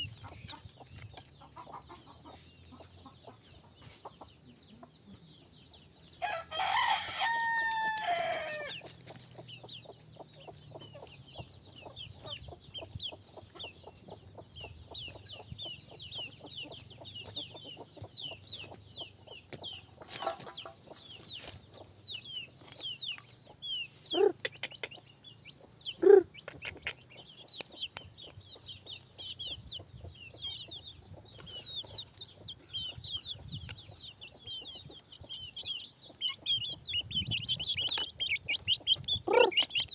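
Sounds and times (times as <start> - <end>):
chickens clucking: 0.0 - 39.9
rooster crowing: 6.2 - 8.8
chicken squawks: 24.1 - 25.0, 26.0 - 27.0, 38.8 - 39.9.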